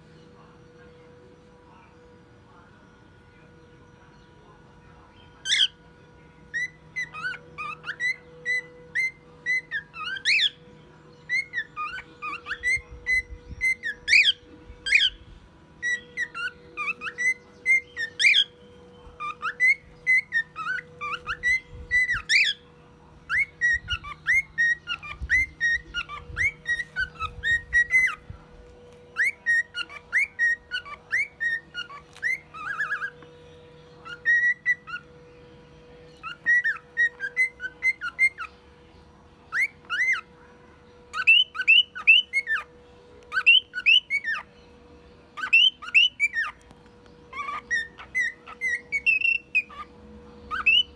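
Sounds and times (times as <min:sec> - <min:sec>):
cockatiel whistling: 0:06.5 - 0:10.6, 0:11.3 - 0:15.2, 0:15.8 - 0:22.6, 0:23.2 - 0:28.4, 0:29.1 - 0:33.3, 0:34.0 - 0:35.1, 0:36.2 - 0:38.5, 0:39.5 - 0:40.4, 0:41.1 - 0:44.5, 0:45.4 - 0:46.6, 0:47.3 - 0:49.9, 0:50.5 - 0:50.9.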